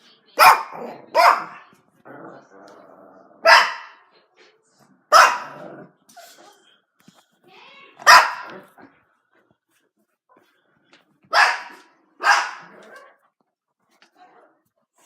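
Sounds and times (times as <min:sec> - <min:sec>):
dog barking: 0:00.4 - 0:01.7, 0:03.4 - 0:04.1, 0:05.1 - 0:05.6, 0:08.0 - 0:08.7, 0:11.3 - 0:13.2.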